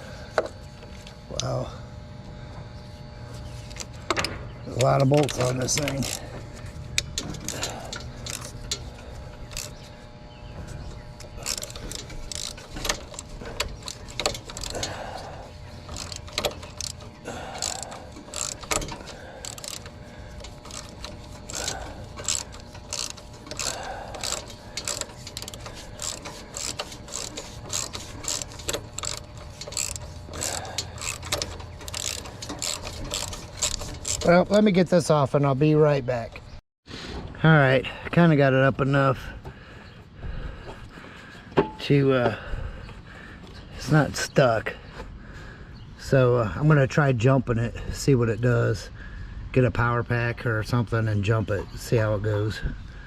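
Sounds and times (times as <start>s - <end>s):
ratchet wrench clicking: 3.7s - 9.9s, 11.2s - 34.5s.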